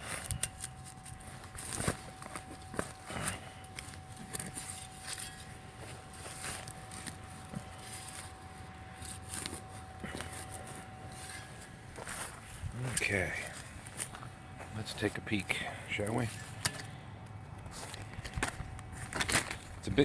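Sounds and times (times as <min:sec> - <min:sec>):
tool digging in sandy soil: 0:00.0 - 0:15.2.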